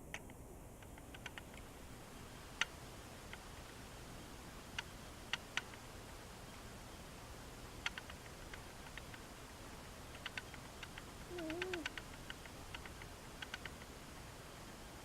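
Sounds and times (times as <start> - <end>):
cat snoring softly: 11.3 - 11.9.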